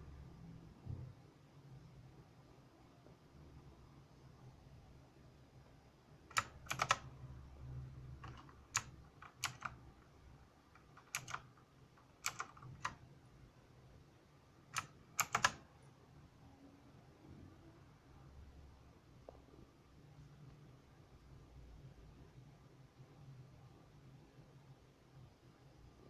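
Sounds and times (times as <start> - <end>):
mechanical keyboard clicks: 6.3 - 7.1, 8.1 - 9.8, 10.7 - 13.0, 14.7 - 15.6.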